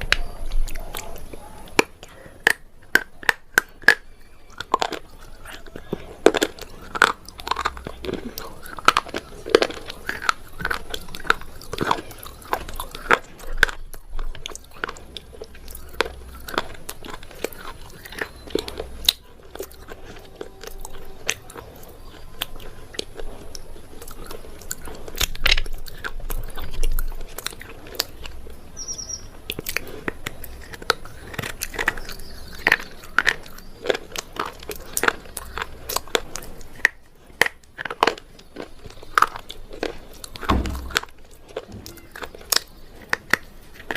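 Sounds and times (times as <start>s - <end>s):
person chewing hard crunchy material: 0.0s - 43.9s.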